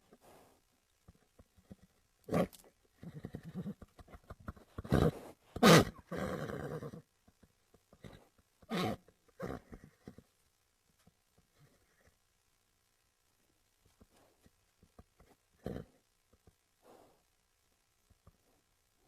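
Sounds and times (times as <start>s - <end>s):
horse snorting: 1.6s - 7.0s.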